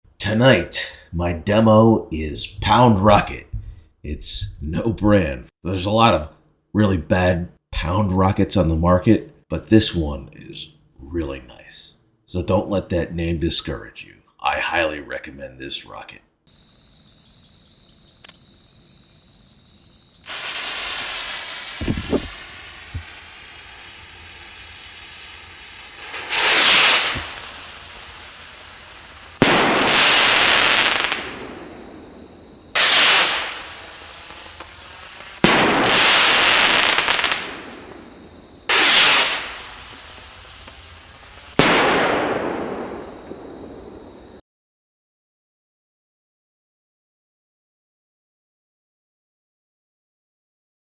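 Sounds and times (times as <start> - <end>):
crickets chirping: 16.5 - 44.4
firework crackling bursts: 19.4 - 44.4
firework bang: 20.2 - 44.4
rocket firework hissing launch: 20.2 - 44.4.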